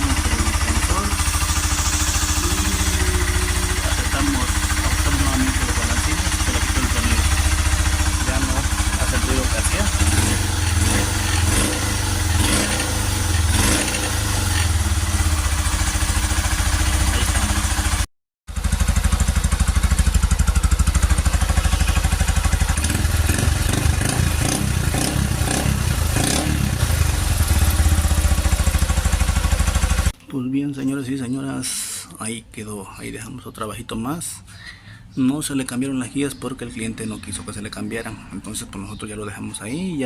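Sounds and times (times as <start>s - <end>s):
motorcycle engine idling: 0.0s - 30.2s.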